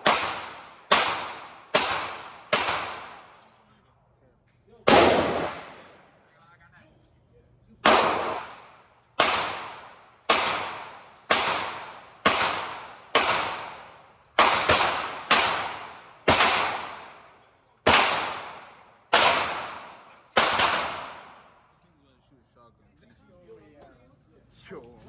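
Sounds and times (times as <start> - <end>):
gunshots: 0.0 - 3.5, 4.9 - 6.1, 7.8 - 21.6.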